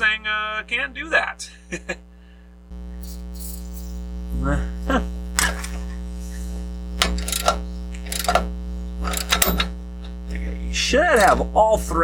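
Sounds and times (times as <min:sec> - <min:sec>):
electrical mains hum: 0:00.0 - 0:12.0
sharp noise bursts: 0:02.8 - 0:09.8.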